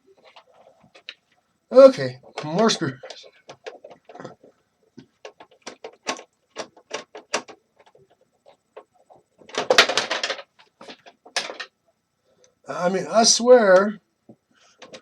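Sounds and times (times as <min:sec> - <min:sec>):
metal and plastic parts knocking: 0:02.0 - 0:11.8, 0:14.7 - 0:15.0.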